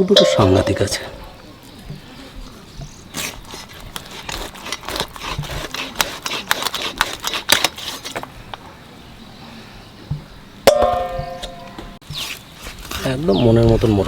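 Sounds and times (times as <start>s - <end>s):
sharp clicks and scrapes: 3.1s - 8.3s.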